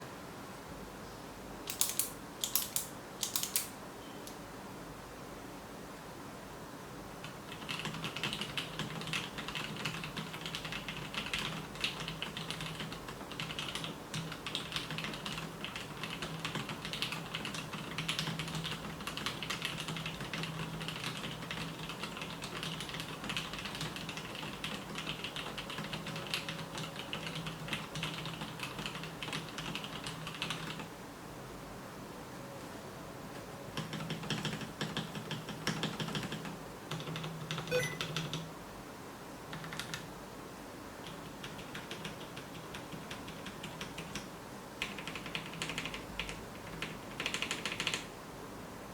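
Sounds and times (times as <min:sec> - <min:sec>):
mechanical keyboard typing: 0:01.7 - 0:03.7, 0:07.2 - 0:30.9, 0:33.8 - 0:38.5, 0:39.5 - 0:40.1, 0:41.0 - 0:48.1.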